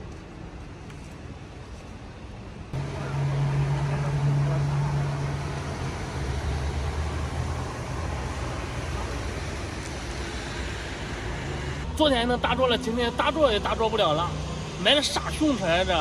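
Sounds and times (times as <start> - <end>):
vehicle engine running: 2.8 - 11.9.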